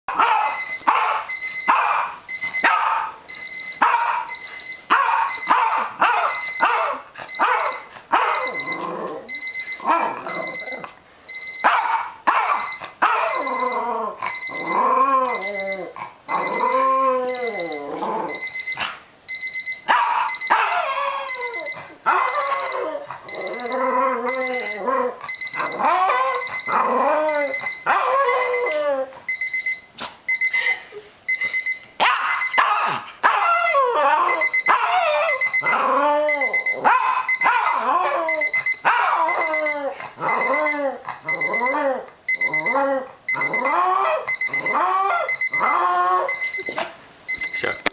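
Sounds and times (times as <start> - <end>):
alarm clock beeping: 0.1 - 32.9, 33.6 - 47.9
dog howling: 23.7 - 29.1, 33.2 - 37.0.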